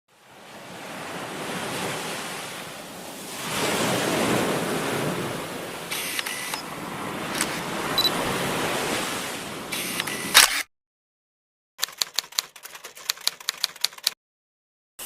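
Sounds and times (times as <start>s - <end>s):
short clicks: 9.7s - 10.7s.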